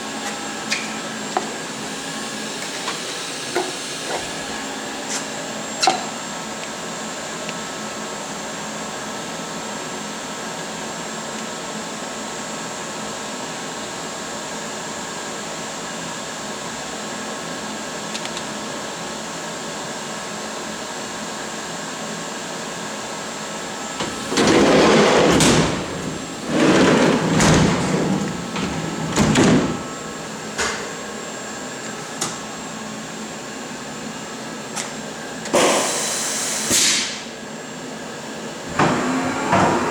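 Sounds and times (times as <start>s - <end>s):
machining centre humming: 23.4s - 36.2s, 38.2s - 39.9s.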